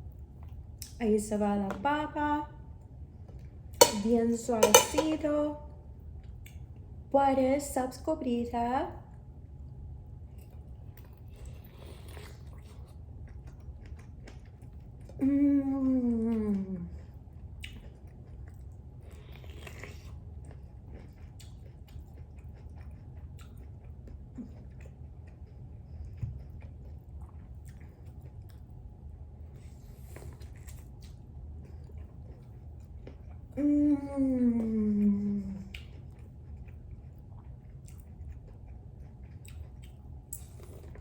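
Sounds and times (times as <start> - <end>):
person chewing: 10.4 - 15.2, 17.0 - 28.8, 29.7 - 33.5, 35.7 - 41.0.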